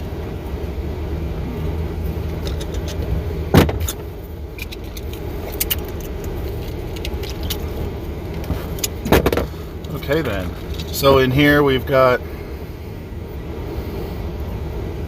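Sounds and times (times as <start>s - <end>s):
steady low hum: 0.0s - 15.0s
loose parts clicking and rattling: 2.2s - 11.2s.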